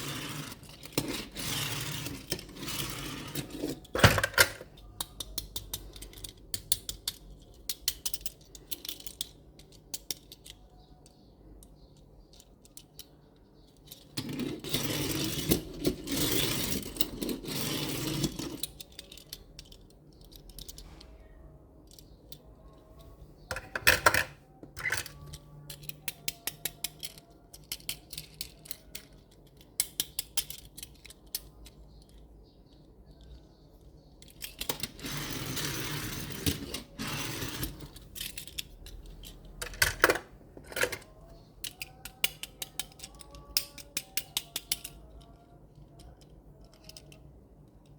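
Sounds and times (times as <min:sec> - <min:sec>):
metallic clicks of toy trucks: 0:03.7 - 0:14.2, 0:18.2 - 0:21.2, 0:21.8 - 0:35.1, 0:36.4 - 0:47.9.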